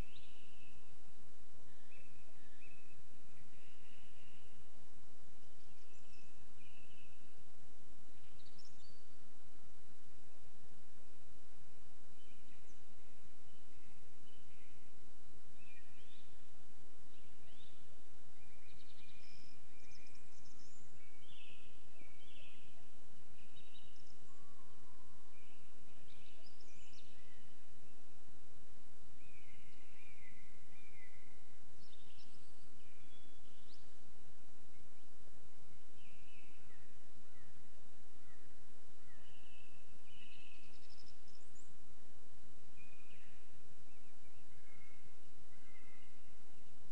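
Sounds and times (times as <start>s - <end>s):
songbirds singing: 0.0s - 46.9s
steady hiss: 0.0s - 46.9s
birds chirping and trilling: 17.1s - 27.6s.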